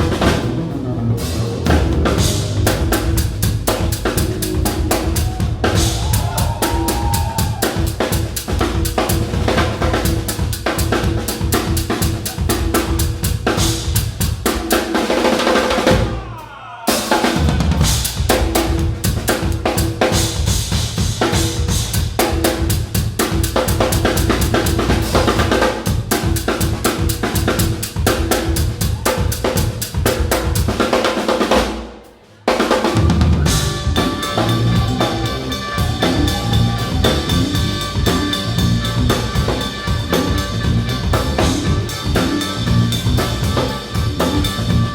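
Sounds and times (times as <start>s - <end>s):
heavy bass: 0.0s - 15.0s, 17.1s - 30.9s, 32.8s - 44.9s
held chords: 0.0s - 16.1s, 33.5s - 44.9s
drum kit playing fast beat: 0.0s - 44.9s.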